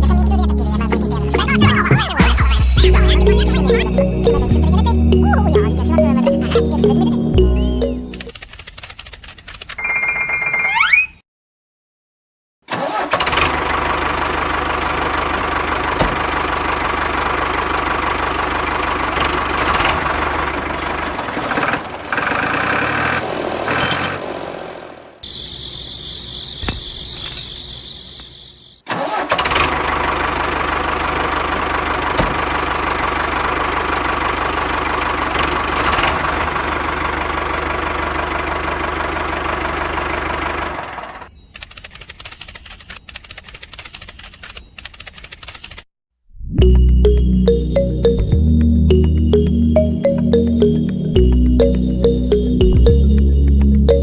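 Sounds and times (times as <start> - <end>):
engine running: 12.7 - 45.8, 46.6 - 54.0
rapid even ticking: 41.6 - 45.8.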